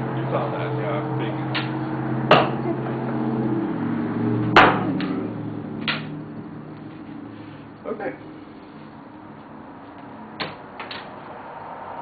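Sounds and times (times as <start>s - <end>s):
steady low hum: 0.0s - 10.8s
sharp knocks: 1.6s - 2.6s, 4.5s - 5.2s.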